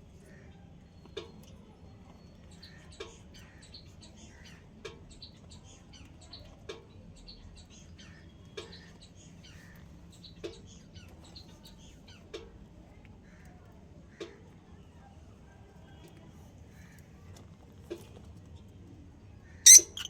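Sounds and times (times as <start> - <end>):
lovebirds chirping: 19.7 - 20.0.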